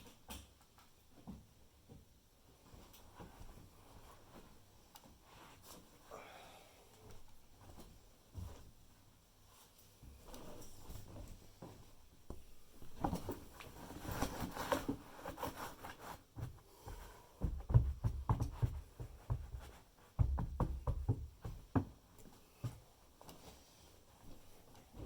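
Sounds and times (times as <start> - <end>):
knocks and thumps on wooden floor: 16.4 - 22.0.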